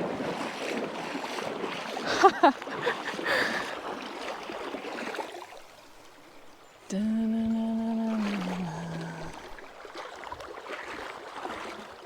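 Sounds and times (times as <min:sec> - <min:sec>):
river water splashing and rushing: 0:00.0 - 0:12.0
brief vocal sound: 0:06.8 - 0:09.8.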